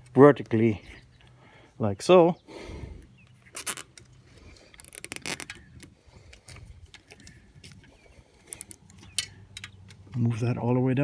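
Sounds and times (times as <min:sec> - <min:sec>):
plastic zip ties clicking and rattling: 0:03.6 - 0:04.1, 0:04.8 - 0:05.9, 0:08.5 - 0:09.0.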